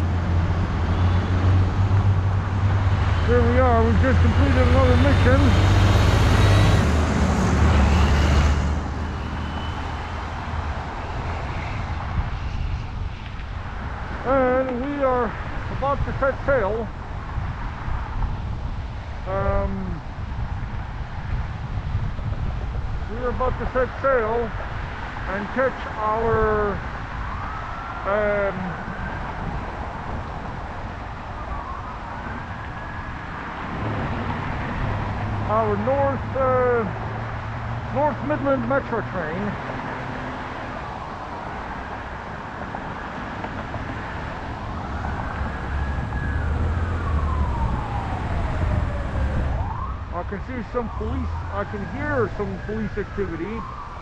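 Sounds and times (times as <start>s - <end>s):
heavy vehicle engine humming: 0.0s - 14.3s, 33.1s - 53.8s
low rumble of street noise: 0.0s - 54.0s
traffic noise: 0.0s - 54.0s
faint police siren wailing: 2.8s - 12.8s, 25.4s - 54.0s.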